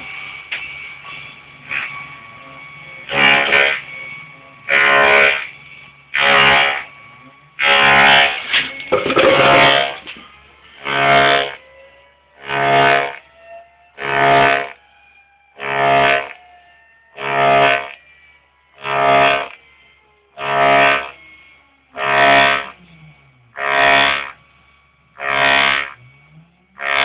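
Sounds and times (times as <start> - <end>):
faint gliding whines: 0.0 - 27.0
mill cutting metal chatter: 1.6 - 14.8, 26.6 - 27.0.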